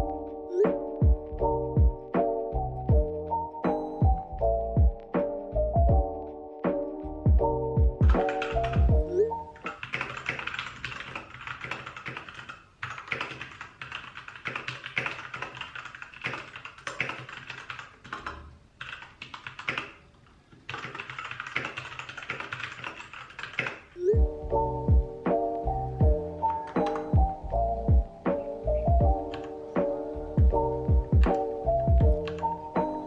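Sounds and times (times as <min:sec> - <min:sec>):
mechanical keyboard typing: 0:08.0 - 0:09.0, 0:09.6 - 0:20.0, 0:20.6 - 0:24.0, 0:26.6 - 0:27.2, 0:29.3 - 0:29.5, 0:32.1 - 0:32.5.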